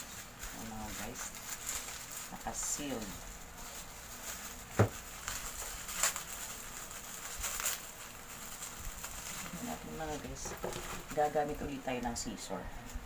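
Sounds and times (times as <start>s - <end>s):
plastic-wrapped parts knocking: 0.4s - 7.8s, 8.4s - 11.4s.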